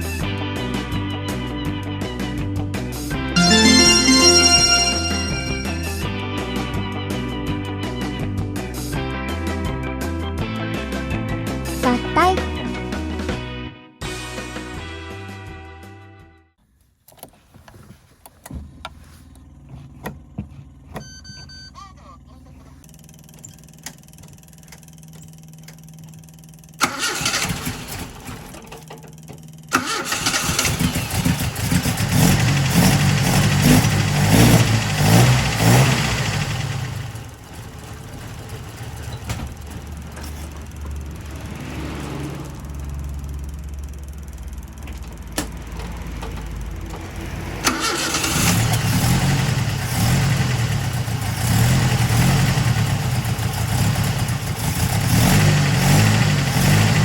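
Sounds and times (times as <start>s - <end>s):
engine cranking on starter: 26.8s - 28.9s, 29.7s - 32.2s, 47.6s - 49.7s
car engine revving and idling: 48.2s - 57.0s.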